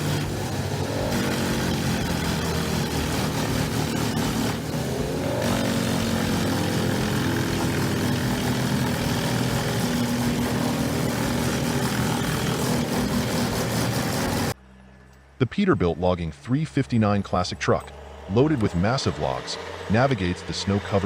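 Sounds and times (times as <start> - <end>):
large engine running under load: 0.0 - 14.6, 16.5 - 21.0.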